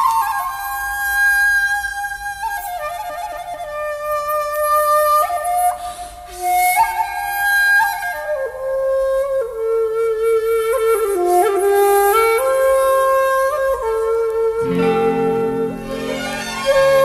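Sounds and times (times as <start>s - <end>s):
flute melody: 0.0s - 17.0s
accompanying melodic line: 14.6s - 17.0s.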